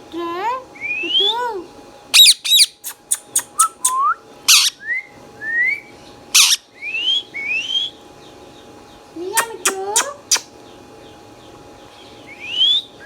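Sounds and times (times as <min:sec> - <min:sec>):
parakeet calling: 0:02.1 - 0:04.9, 0:06.3 - 0:08.0, 0:09.2 - 0:10.8
parakeet screeches: 0:02.2 - 0:03.6, 0:04.5 - 0:04.8, 0:06.4 - 0:06.6.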